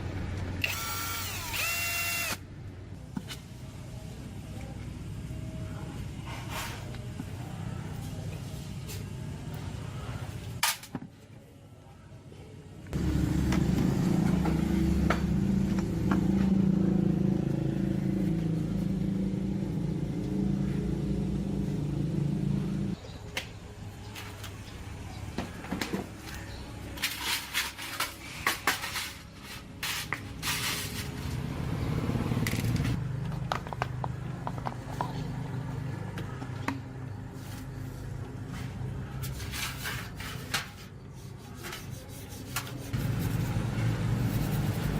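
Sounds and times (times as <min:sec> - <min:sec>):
electric motor humming: 0:00.6 - 0:02.4.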